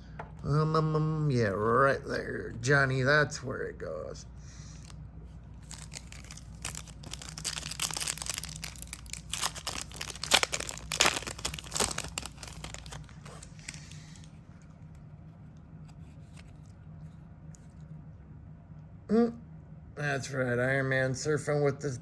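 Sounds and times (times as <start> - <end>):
wrapper tearing and crinkling: 5.6 - 14.3.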